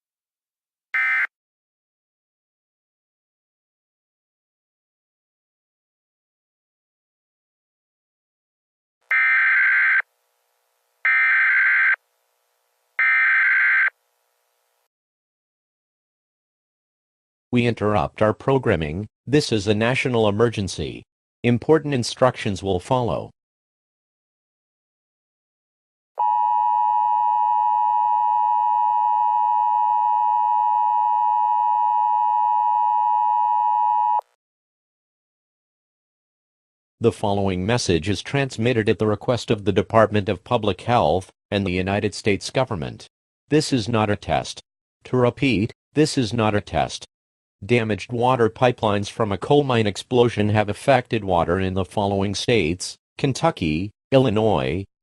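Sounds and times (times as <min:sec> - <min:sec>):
two-tone alert tone: 0:01.0 - 0:01.3.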